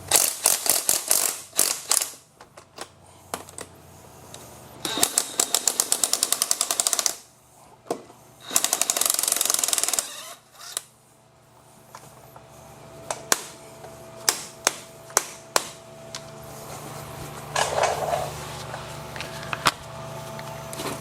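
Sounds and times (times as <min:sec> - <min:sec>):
impact wrench hammering: 0:04.8 - 0:07.3, 0:08.4 - 0:10.4, 0:13.1 - 0:13.6, 0:14.2 - 0:15.8.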